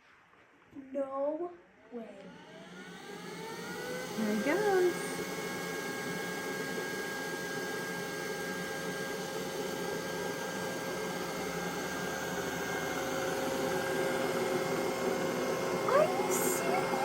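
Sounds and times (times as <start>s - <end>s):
robot vacuum whirring: 2.1s - 17.0s
thin steady whine: 14.8s - 17.0s.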